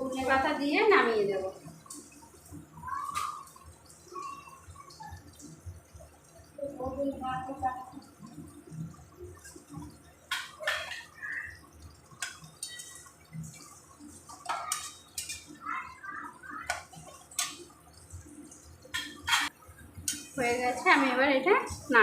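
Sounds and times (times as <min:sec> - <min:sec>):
metal spoon clinking against pot: 0:14.4 - 0:15.5, 0:20.1 - 0:20.4.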